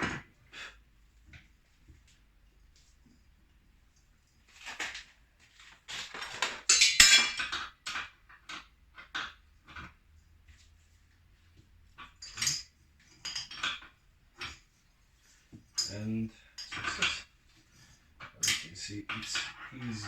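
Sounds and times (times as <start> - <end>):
metal tools clinking and scraping: 4.4 - 10.3, 12.0 - 20.0.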